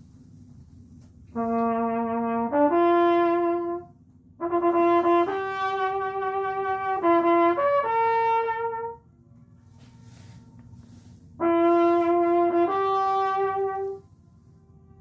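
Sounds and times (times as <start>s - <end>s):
brass horn playing slow melody: 1.2s - 9.1s, 9.9s - 15.0s
horn echo off rock walls: 1.3s - 9.0s.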